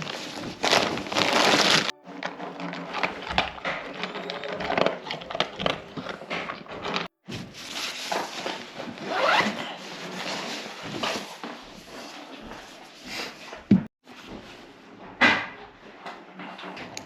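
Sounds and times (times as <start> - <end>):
zip being pulled: 0.0 - 7.0, 9.0 - 10.4
gear rustling and scraping: 0.0 - 7.1.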